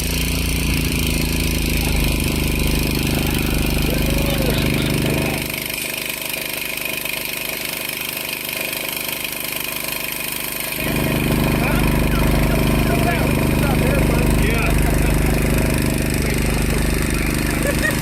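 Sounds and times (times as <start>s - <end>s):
engine idling: 0.0s - 18.0s.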